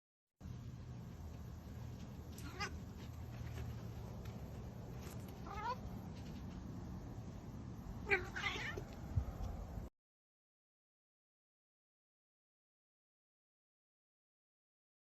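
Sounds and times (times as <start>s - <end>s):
steady low hum: 0.4s - 8.2s
cat meowing: 2.4s - 2.8s, 5.4s - 5.9s, 8.0s - 8.9s.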